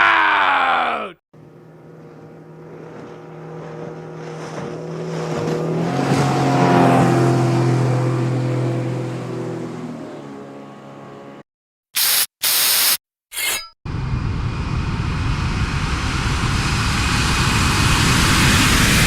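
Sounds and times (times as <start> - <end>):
vehicle engine hum passing by: 1.4 - 11.4.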